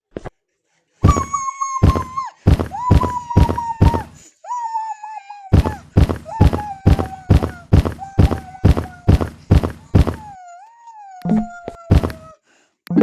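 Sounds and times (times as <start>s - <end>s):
steady thumping beat: 1.0s - 4.2s, 5.6s - 10.4s, 11.9s - 12.2s.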